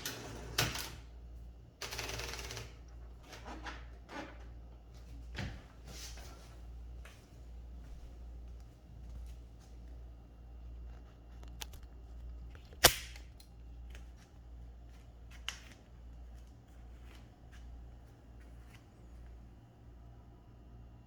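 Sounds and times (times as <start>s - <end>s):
typewriter mechanism clicking: 1.8s - 2.8s
typewriter loud snap: 12.8s - 13.3s.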